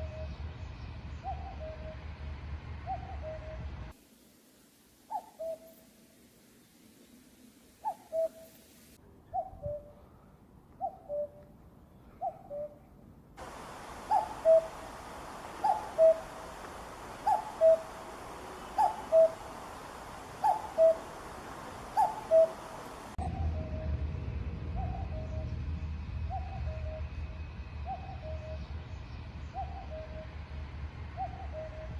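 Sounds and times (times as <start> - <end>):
steady hiss: 3.9 - 9.0, 13.4 - 23.2
cuckoo calling: 5.1 - 5.8, 7.8 - 8.6, 13.4 - 23.7.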